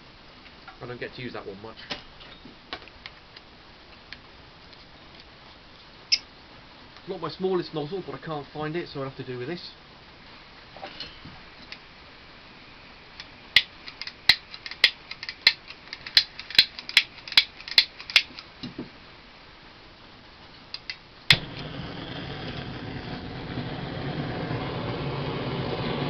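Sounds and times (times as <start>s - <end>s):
torch flame hissing: 21.3s - 26.0s.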